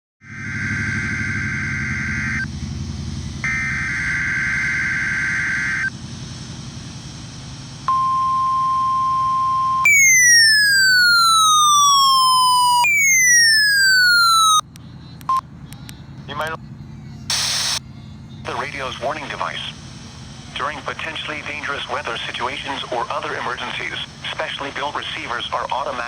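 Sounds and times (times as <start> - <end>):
weather radio alarm tone: 0.2 - 2.5, 3.4 - 5.9, 7.9 - 14.6, 17.3 - 17.8, 18.4 - 19.9, 20.6 - 26.0
falling siren-like sweeps: 0.2 - 6.2, 8.2 - 14.6
steady low rumble: 1.6 - 9.8, 14.6 - 26.0
digital data burst screech: 9.9 - 14.6, 17.3 - 17.8.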